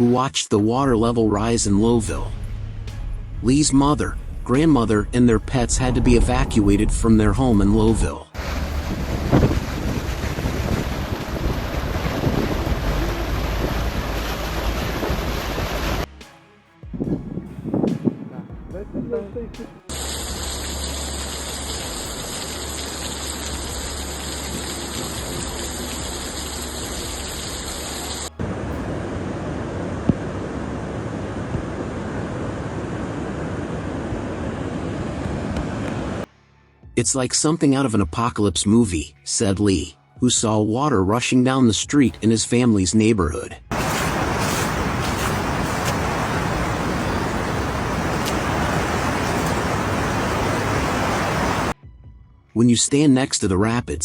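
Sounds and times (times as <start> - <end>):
low hum: 1.6 - 16.1, 19.9 - 36.3
rough rushing with low rumble: 1.6 - 16.1, 43.7 - 51.8
rushing water hiss: 8.4 - 16.1, 19.9 - 33.4, 43.7 - 51.8.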